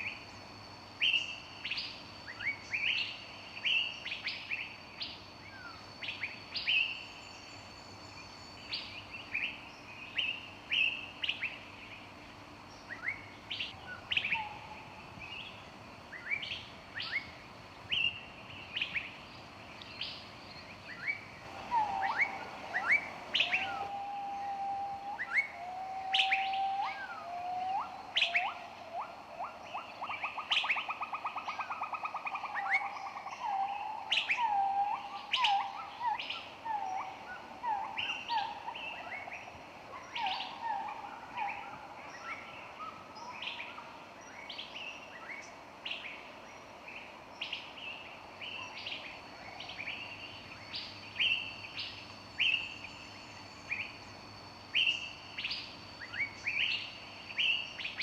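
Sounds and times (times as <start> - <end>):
songbirds singing and chirping: 0.0 - 58.0
lower whistled bird notes: 19.9 - 46.1.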